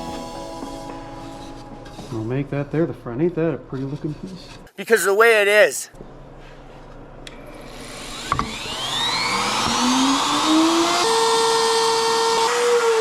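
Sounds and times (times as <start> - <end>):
woodworking router motor whine: 7.6 - 13.0.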